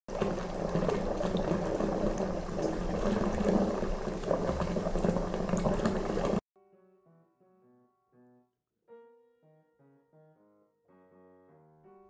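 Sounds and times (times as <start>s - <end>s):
water pouring into a bathtub: 0.1s - 6.4s.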